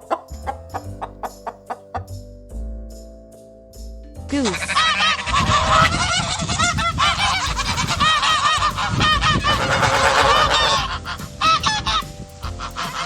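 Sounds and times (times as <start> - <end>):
geese honking: 4.5 - 13.0.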